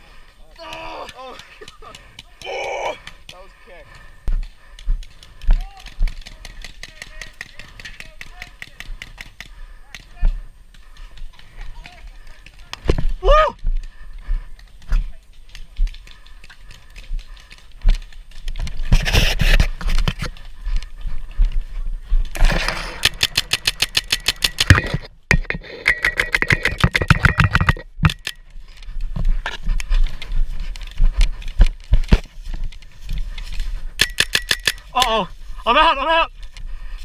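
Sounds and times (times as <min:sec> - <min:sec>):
paintball markers firing: 0:04.4 - 0:13.0, 0:22.3 - 0:25.0, 0:34.0 - 0:35.1.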